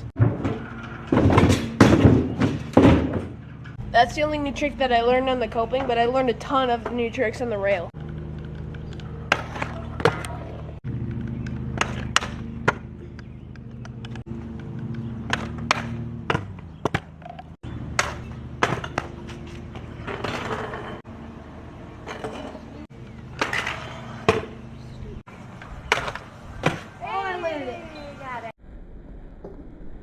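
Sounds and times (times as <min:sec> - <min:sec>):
rolling wheel noise: 0:00.0 - 0:28.5
scooter wheels clacking: 0:05.0 - 0:21.0, 0:22.0 - 0:24.9.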